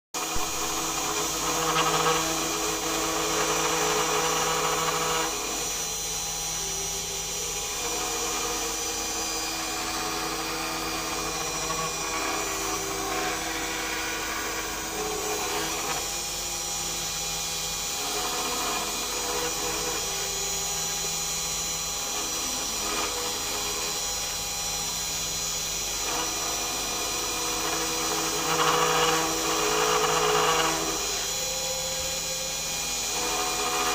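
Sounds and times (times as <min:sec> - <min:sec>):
motor hums changing pitch: 0:00.2 - 0:33.9
router spindle cutting wood: 0:00.2 - 0:33.9.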